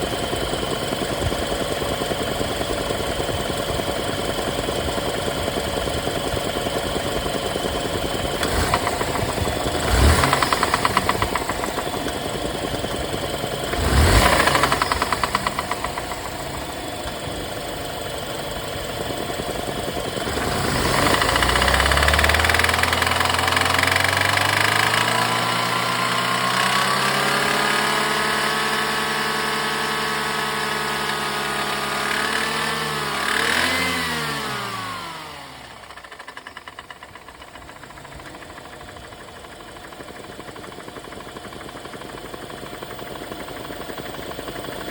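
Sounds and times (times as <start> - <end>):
engine idling with rhythmic knock: 0.0 - 44.9
engine revving: 7.5 - 37.4.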